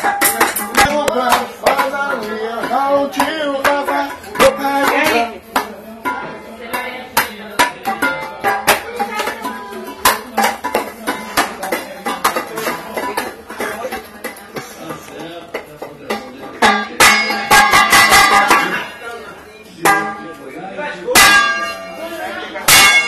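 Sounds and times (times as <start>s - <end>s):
sharp percussion hits: 16.6s - 18.7s, 21.1s - 22.0s, 22.7s - 23.0s.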